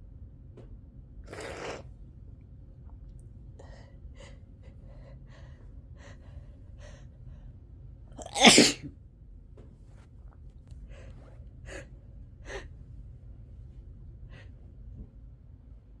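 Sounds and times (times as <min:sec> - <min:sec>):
person sneezing: 0:08.2 - 0:08.9.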